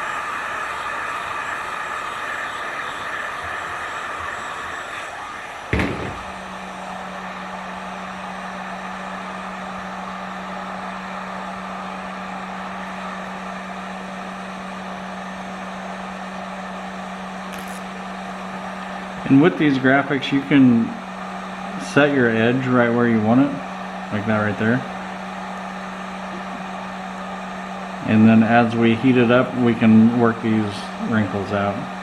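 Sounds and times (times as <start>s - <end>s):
heat gun blowing: 0.0s - 11.6s, 12.4s - 30.5s
steady low hum: 0.0s - 32.0s
sharp knock: 5.7s - 6.3s.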